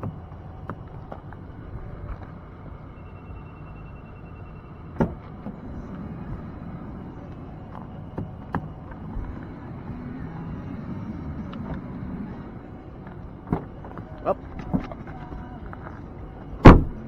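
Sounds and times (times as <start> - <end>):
wind rumble on microphone: 0.0 - 3.0.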